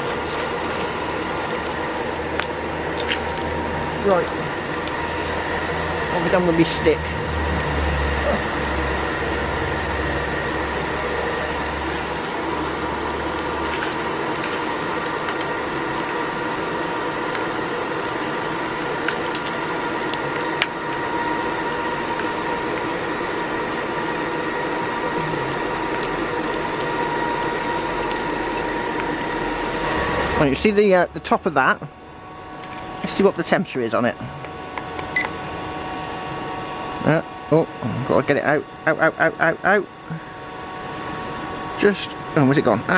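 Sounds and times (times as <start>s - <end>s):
low hum: 0.0s - 33.1s
furnace blower whirring drone: 0.0s - 42.9s.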